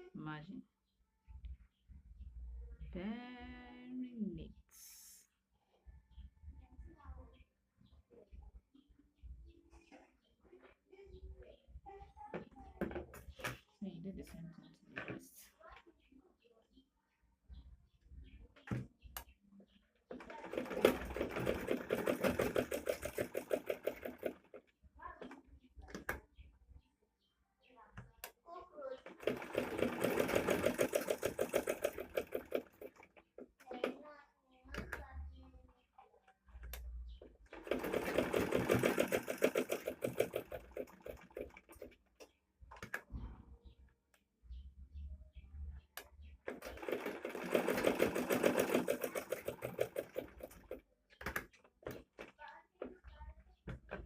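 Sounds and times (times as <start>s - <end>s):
sewing machine stitching: 20.1s - 24.6s, 29.0s - 34.0s, 37.5s - 42.0s, 46.4s - 52.3s.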